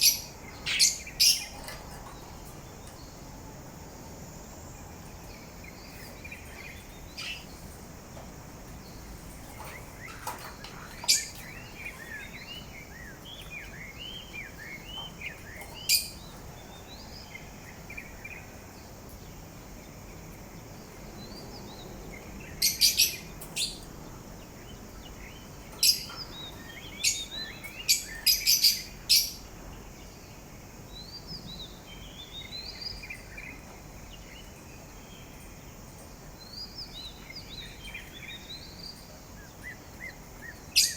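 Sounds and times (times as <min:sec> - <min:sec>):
parrot chirps and warbles: 0:00.0 - 0:02.2, 0:13.4 - 0:16.4, 0:22.5 - 0:23.9, 0:25.7 - 0:29.5, 0:37.1 - 0:40.9.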